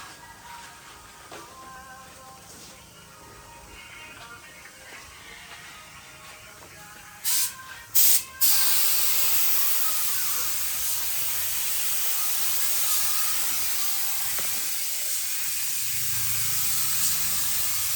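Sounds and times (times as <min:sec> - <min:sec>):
compressed air hissing from nozzle: 0:07.1 - 0:17.9.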